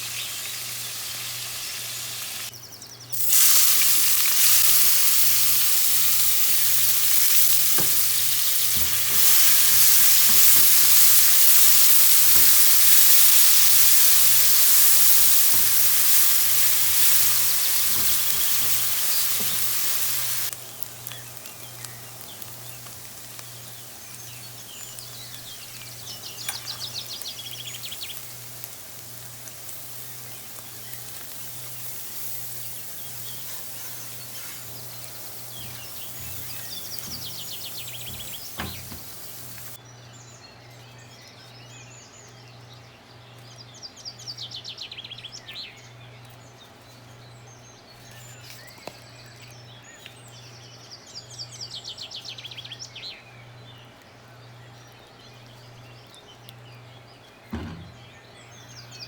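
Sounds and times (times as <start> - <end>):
food sizzling in frying pan: 0.0 - 2.5, 3.1 - 39.8
rapid bird chirps: 29.7 - 39.8.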